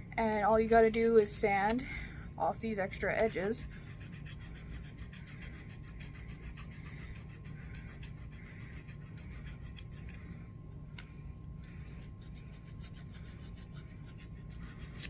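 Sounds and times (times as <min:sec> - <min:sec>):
nail file rasping: 0:03.1 - 0:10.2, 0:11.6 - 0:15.0.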